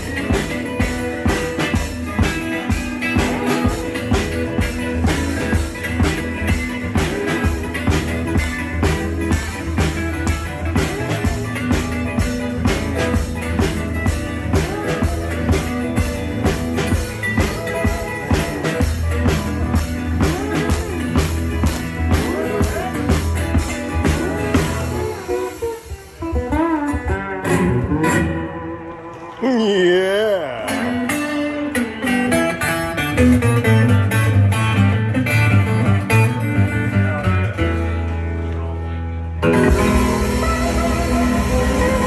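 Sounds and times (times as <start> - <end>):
drum kit beat: 0.0 - 25.9, 39.4 - 42.0
bass guitar: 0.0 - 42.0
electric guitar: 0.0 - 42.0.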